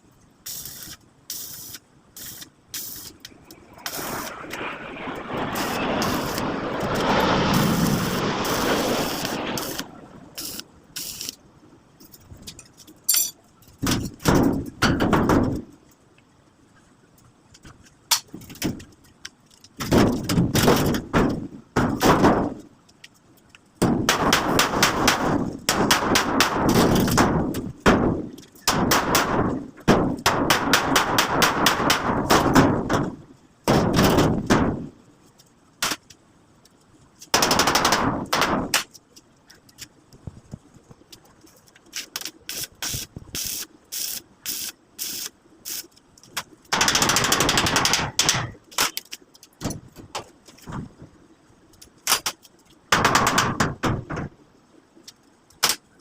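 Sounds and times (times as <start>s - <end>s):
sharp crackling metalwork bursts: 0.4s - 11.4s, 23.8s - 33.1s, 37.2s - 39.0s, 41.9s - 49.5s, 52.0s - 54.3s.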